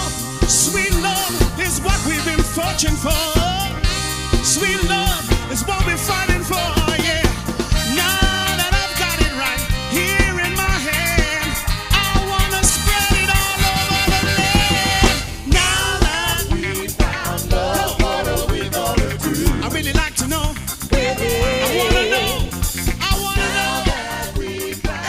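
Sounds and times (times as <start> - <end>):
steady drum beat: 0.0 - 25.0
upbeat band music: 0.0 - 25.0
person singing: 14.3 - 20.2, 20.9 - 24.3.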